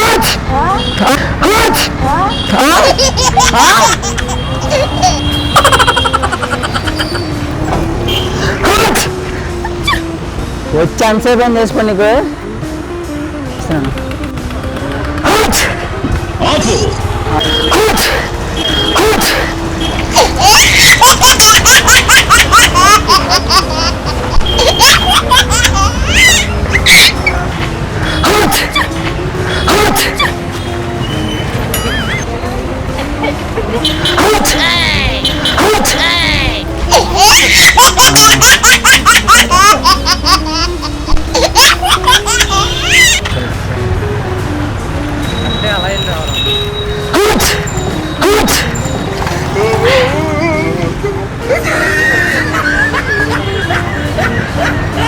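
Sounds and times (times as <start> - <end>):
background music: 0.0 - 55.0
high-pitched laughter: 2.6 - 7.2, 20.1 - 27.5, 33.2 - 43.3, 49.5 - 55.0.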